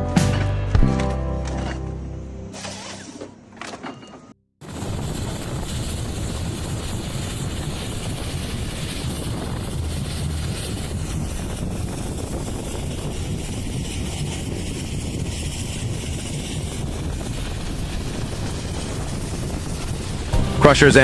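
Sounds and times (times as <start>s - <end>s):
heavy machinery engine drone: 20.3s - 21.0s.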